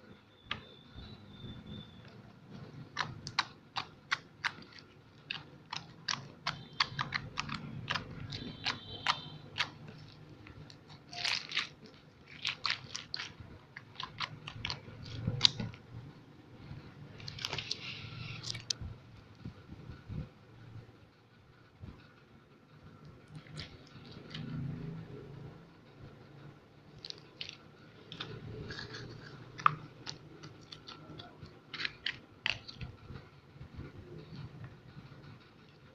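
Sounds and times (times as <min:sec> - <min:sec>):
slime squelching: 0:00.4 - 0:19.3, 0:22.9 - 0:35.9
slime clicking and popping: 0:02.1 - 0:15.8, 0:27.0 - 0:32.9.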